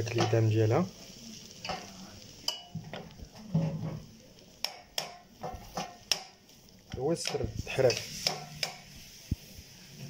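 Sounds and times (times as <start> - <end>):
fat sizzling in a pot: 0.0 - 10.0
utensil clicking against pot: 4.6 - 5.2, 5.8 - 8.9.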